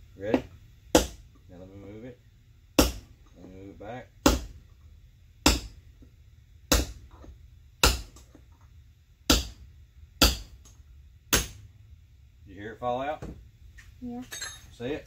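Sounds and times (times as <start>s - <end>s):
hammer striking steel punch: 0.3s - 1.2s, 2.8s - 3.1s, 4.2s - 4.6s, 5.4s - 5.8s, 6.7s - 7.2s, 7.8s - 8.3s, 9.3s - 9.6s, 10.2s - 10.7s, 11.3s - 11.6s.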